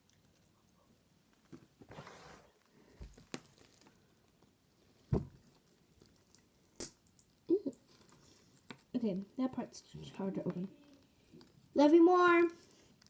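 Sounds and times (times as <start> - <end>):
plastic packaging rustling: 2.6 - 4.2
thump: 5.1 - 5.4.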